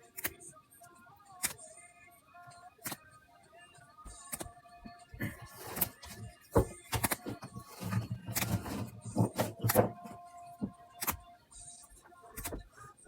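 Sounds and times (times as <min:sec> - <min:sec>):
cards clicking and tapping: 0:00.2 - 0:00.4, 0:01.4 - 0:01.6, 0:04.1 - 0:04.5, 0:05.2 - 0:11.2, 0:12.4 - 0:12.7
card wrappers rustling: 0:05.2 - 0:10.2.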